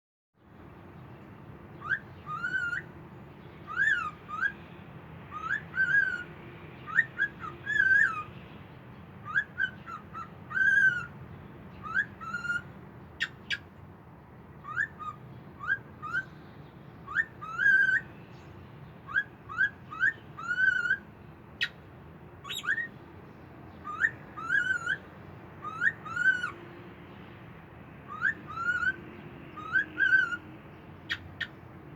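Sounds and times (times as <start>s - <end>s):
cockatiel whistling: 1.8s - 2.9s, 3.7s - 4.6s, 5.3s - 6.2s, 6.9s - 8.3s, 9.3s - 11.1s, 11.8s - 12.6s, 14.6s - 16.3s, 17.1s - 18.1s, 19.1s - 21.0s, 22.5s - 22.9s, 23.8s - 25.0s, 25.6s - 26.6s, 28.1s - 29.0s, 29.6s - 30.4s.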